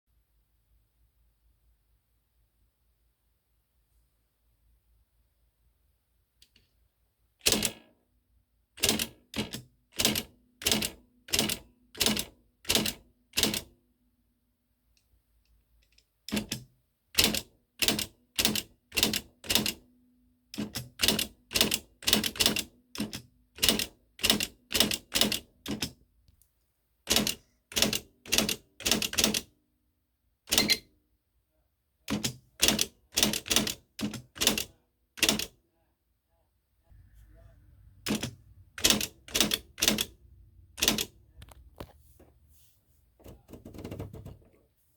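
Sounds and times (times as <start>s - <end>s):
faint low hum: 35.7s - 39.3s
typewriter keys clacking: 38.1s - 40.1s, 40.8s - 41.1s.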